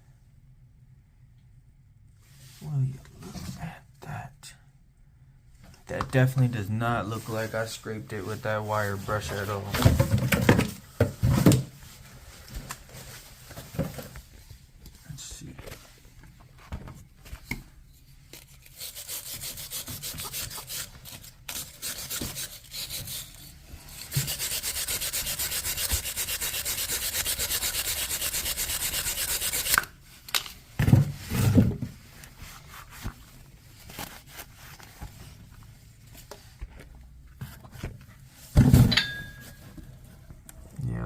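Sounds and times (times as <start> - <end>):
brush scrubbing rusted metal: 18.7 - 29.8.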